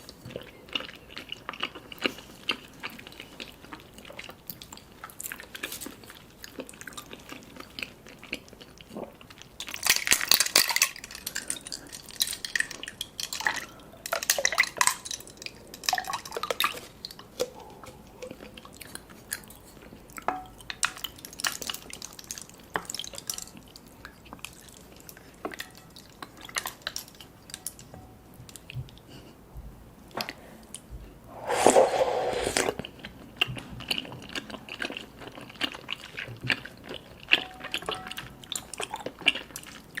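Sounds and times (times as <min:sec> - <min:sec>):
wet chewing and smacking: 0:00.0 - 0:27.7, 0:32.9 - 0:40.0
slurping through a straw: 0:31.3 - 0:32.9.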